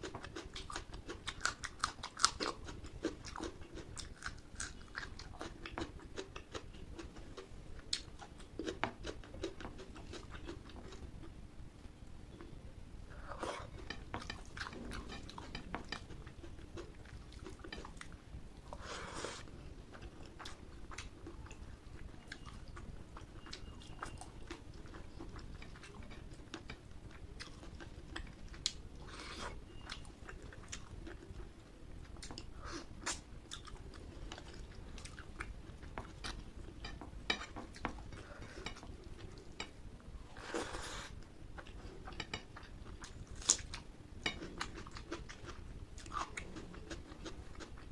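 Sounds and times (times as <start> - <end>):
chewing with wet mouth clicks: 0.0 - 11.0, 29.7 - 39.8, 41.6 - 47.9.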